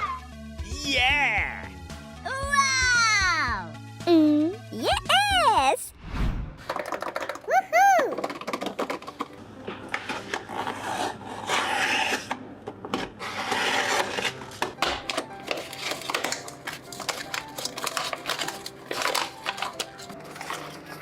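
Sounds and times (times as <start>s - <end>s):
paper rustling and crinkling: 13.5s - 21.0s.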